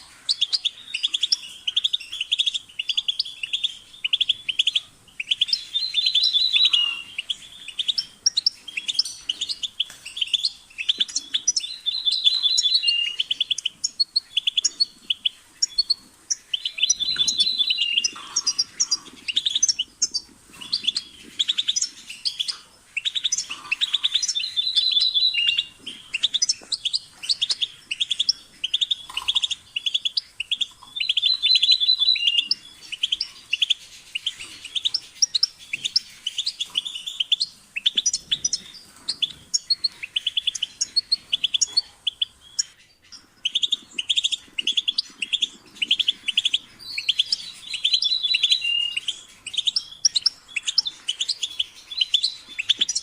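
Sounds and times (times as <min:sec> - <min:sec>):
finch twittering song: 0:00.0 - 0:53.0.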